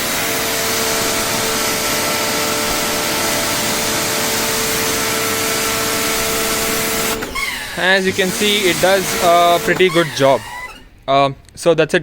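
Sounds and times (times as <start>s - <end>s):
pressure washer motor running: 0.0s - 11.1s.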